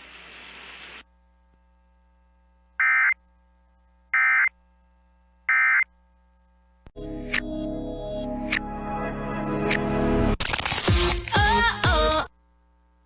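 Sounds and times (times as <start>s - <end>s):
faint radio hiss: 0.0s - 6.9s.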